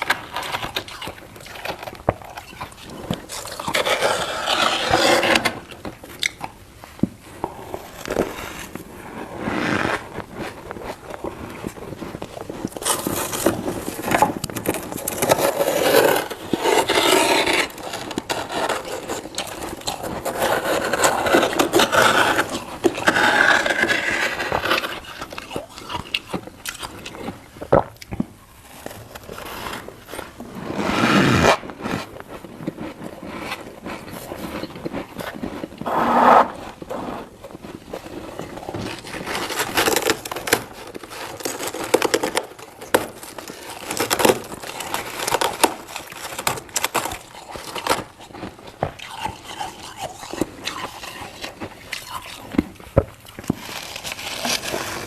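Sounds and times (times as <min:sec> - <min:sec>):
frost being crunched and scraped: 0:00.0 - 0:27.7, 0:28.5 - 0:55.0.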